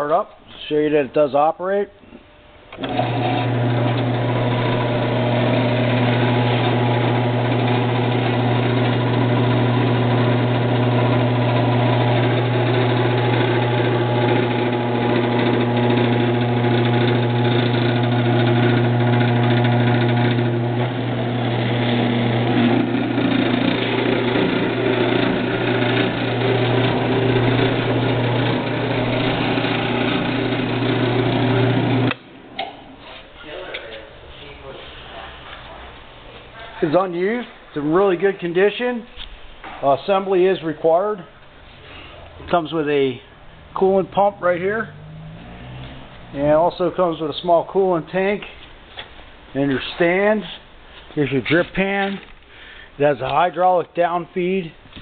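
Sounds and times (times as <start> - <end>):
band saw running: 2.8 - 32.2.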